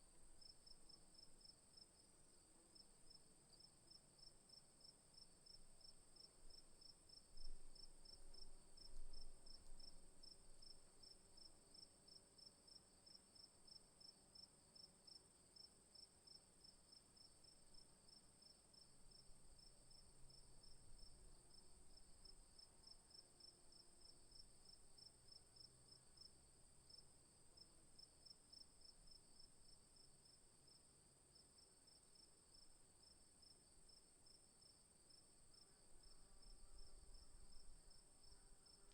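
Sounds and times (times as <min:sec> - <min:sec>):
crickets chirping: 0:16.9 - 0:38.9.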